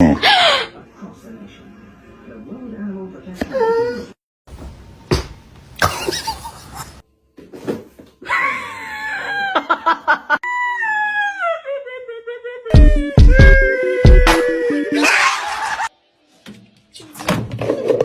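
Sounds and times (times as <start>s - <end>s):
animal wailing cry: 0.1s - 0.8s, 13.4s - 15.9s.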